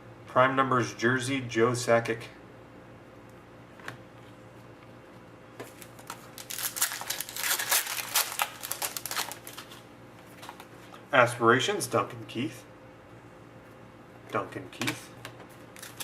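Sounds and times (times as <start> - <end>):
wrapper crinkling: 5.7 - 10.6, 15.8 - 16.0.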